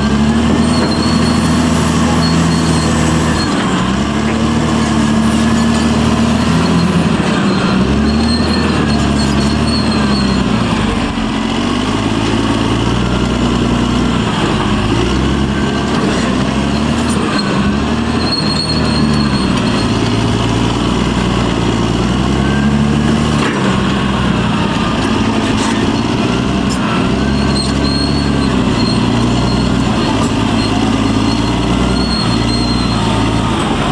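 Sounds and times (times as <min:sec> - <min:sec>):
bulldozer diesel engine: 0:00.0 - 0:33.9
brief high squeaks: 0:00.5 - 0:03.8, 0:07.5 - 0:10.4, 0:27.2 - 0:33.1.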